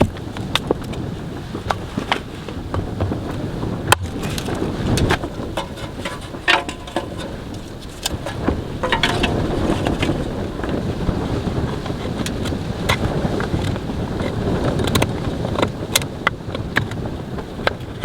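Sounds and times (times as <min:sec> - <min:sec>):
blizzard wind rumble: 0:00.0 - 0:18.0
clicks and knocks of handling: 0:01.7 - 0:10.8, 0:14.8 - 0:17.0.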